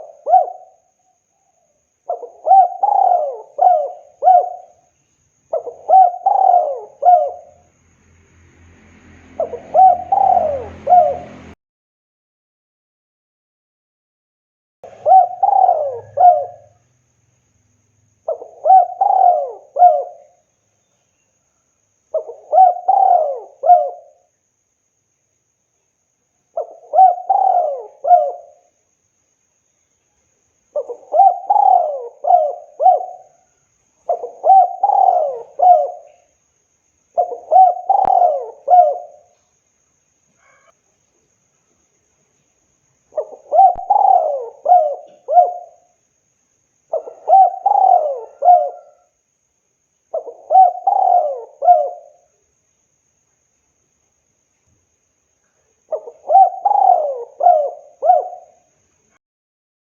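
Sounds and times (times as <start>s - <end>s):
dove cooing: 0.0s - 0.9s, 2.1s - 4.9s, 5.5s - 7.6s, 9.4s - 11.6s, 14.8s - 16.8s, 18.3s - 20.4s, 22.1s - 24.3s, 26.6s - 28.7s, 30.7s - 36.3s, 37.2s - 39.3s, 43.1s - 45.9s, 46.9s - 49.2s, 50.1s - 52.3s, 55.9s - 58.7s.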